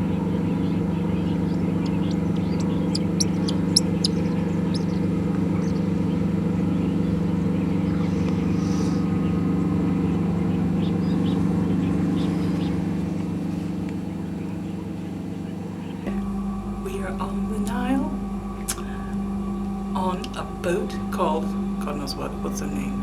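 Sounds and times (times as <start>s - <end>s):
boat machinery drone: 0.0s - 23.0s
high bird chirps: 0.4s - 5.9s.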